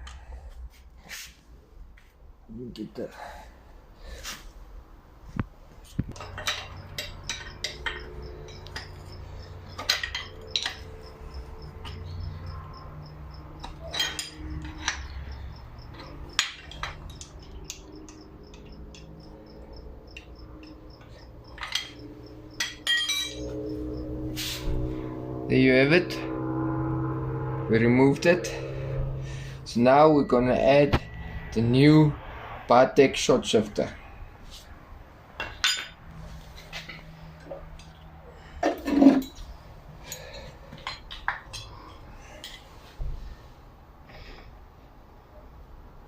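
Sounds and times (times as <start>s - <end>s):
low steady hum: 4.7s - 34.4s
hand tools clicking on metal: 6.1s - 11.1s, 13.6s - 23.5s.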